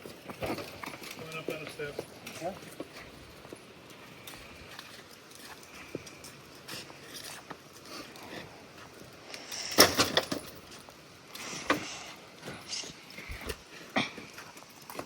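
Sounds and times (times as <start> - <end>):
metal clinking and clanking: 9.3 - 10.8.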